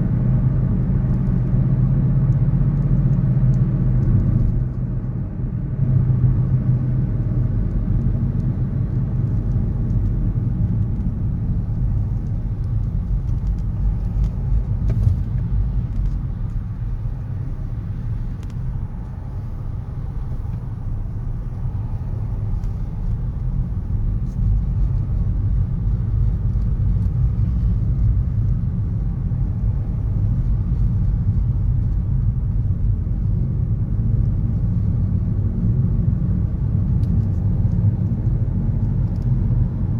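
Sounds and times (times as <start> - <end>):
road traffic rumble: 0.0 - 39.9.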